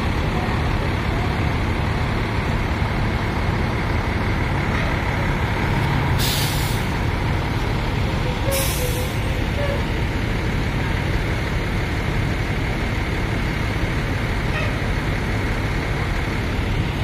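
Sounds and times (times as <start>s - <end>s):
bus engine running: 0.0s - 17.0s
air brake hisses: 6.2s - 6.9s, 8.5s - 9.2s.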